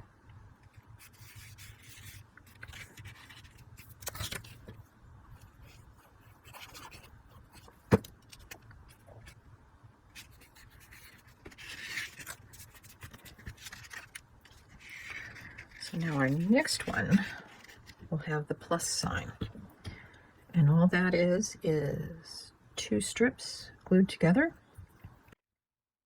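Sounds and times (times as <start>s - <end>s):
paper sliding and rubbing: 1.0s - 4.8s, 10.1s - 18.0s.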